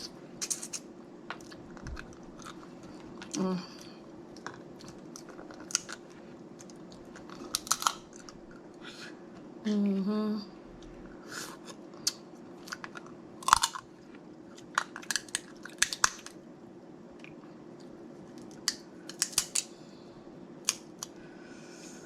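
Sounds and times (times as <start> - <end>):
crab shells cracking by hand: 6.6 - 8.3, 12.1 - 13.9, 14.6 - 16.4, 18.4 - 19.7, 20.6 - 21.1.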